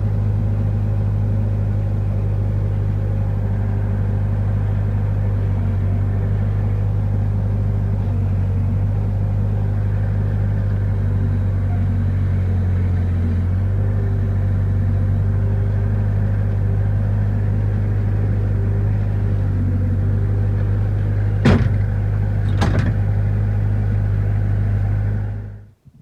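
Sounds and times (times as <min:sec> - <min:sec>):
skid steer engine droning: 0:00.0 - 0:25.8
sharp knocks: 0:21.4 - 0:23.1.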